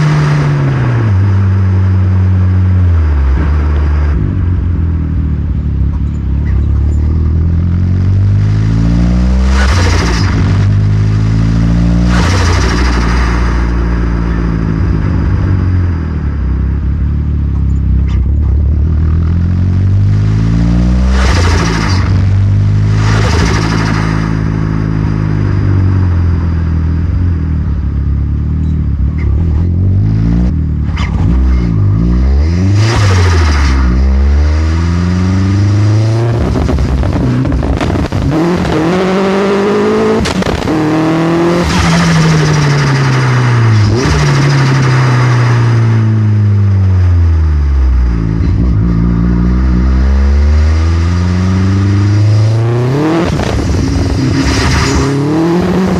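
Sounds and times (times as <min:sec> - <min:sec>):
car engine revving: 0:00.0 - 0:55.9
exhaust cracks: 0:12.0 - 0:19.0, 0:21.0 - 0:26.4, 0:35.7 - 0:39.1, 0:40.0 - 0:46.5, 0:52.4 - 0:55.9.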